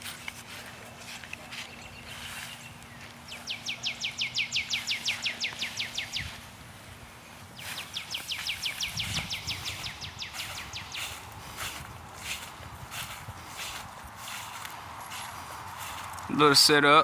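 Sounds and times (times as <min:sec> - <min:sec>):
songbird trilling: 0:01.7 - 0:06.5, 0:07.6 - 0:12.4.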